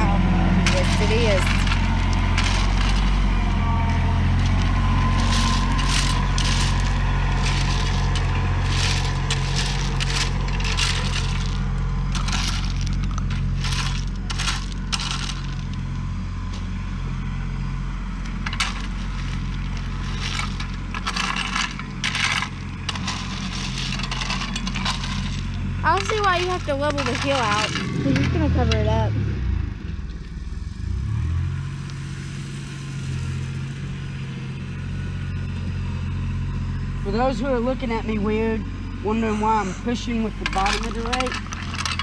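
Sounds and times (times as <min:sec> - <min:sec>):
rocks and dirt clattering: 0:00.0 - 0:17.1, 0:18.0 - 0:29.2, 0:38.2 - 0:42.0
tractor engine running: 0:00.0 - 0:42.0.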